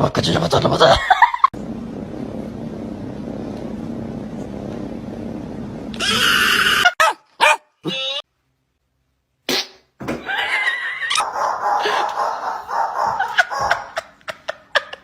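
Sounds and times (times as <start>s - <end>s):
dog barking and yipping: 6.9s - 7.8s, 11.1s - 14.1s.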